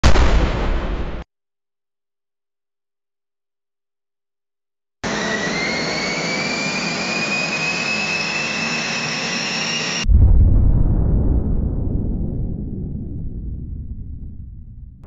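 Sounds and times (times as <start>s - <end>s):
deep rumbling boom: 0.0s - 1.2s, 10.0s - 15.0s
whine rising in pitch: 5.0s - 10.1s.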